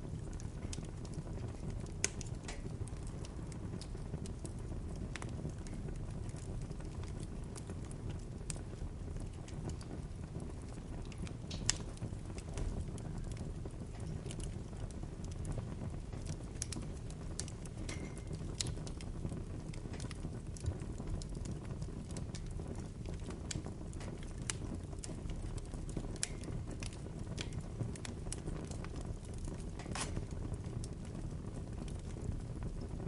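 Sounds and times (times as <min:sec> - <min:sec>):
bonfire low rumble: 0:00.0 - 0:33.0
crackles and pops of burning wood: 0:00.0 - 0:33.0.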